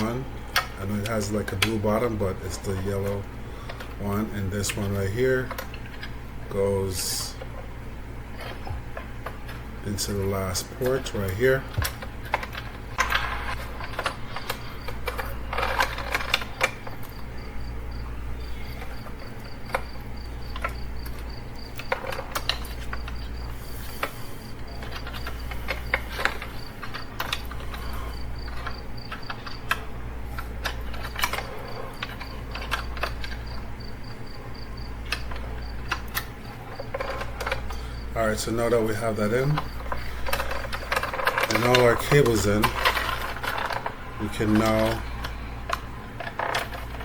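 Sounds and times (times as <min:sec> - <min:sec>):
steady low hum: 0:00.0 - 0:47.0
plastic connectors clicking and rattling: 0:39.4 - 0:47.0.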